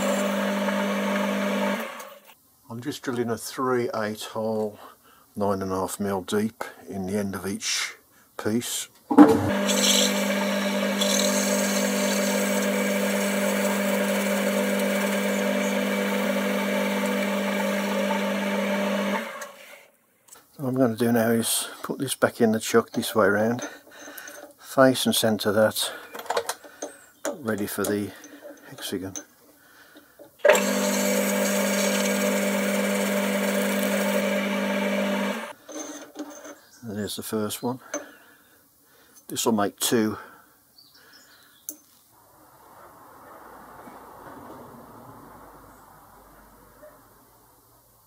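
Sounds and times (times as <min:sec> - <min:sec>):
drill cutting metal: 0:00.0 - 0:02.2, 0:09.4 - 0:19.8, 0:30.4 - 0:35.5
metal lathe running: 0:00.0 - 0:02.2, 0:09.5 - 0:19.6, 0:30.4 - 0:35.5
workshop machine motor whine: 0:00.0 - 0:02.2, 0:09.4 - 0:19.8, 0:30.4 - 0:35.5.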